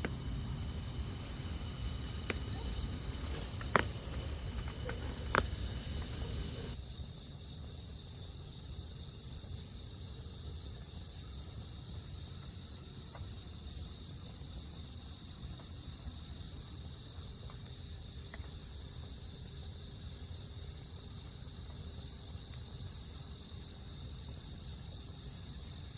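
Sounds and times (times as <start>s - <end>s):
campfire pops: 0.0s - 6.8s
low steady rumble: 0.0s - 6.8s
crickets chirping: 0.0s - 25.9s.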